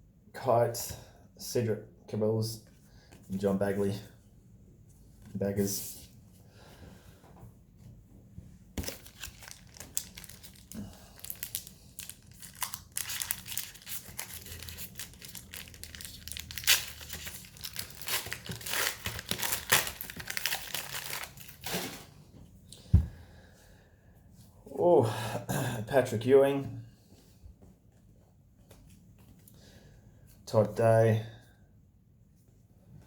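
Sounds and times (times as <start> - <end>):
wrapper tearing and crinkling: 8.8 - 22.0.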